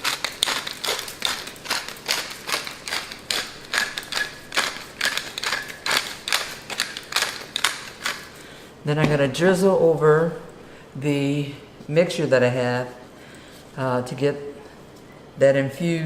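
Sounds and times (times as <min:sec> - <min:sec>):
pepper grinder clicking: 0:00.0 - 0:08.3.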